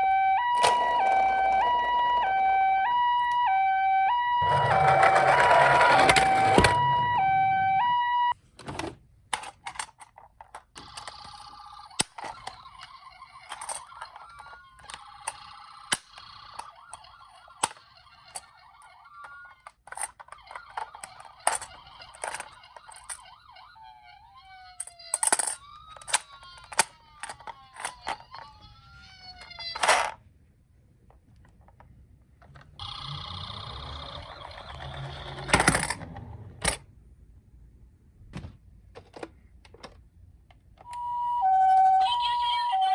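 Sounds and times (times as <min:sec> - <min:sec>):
toy electronic siren: 0:00.0 - 0:08.4, 0:10.8 - 0:29.9, 0:32.8 - 0:35.9, 0:40.8 - 0:42.9.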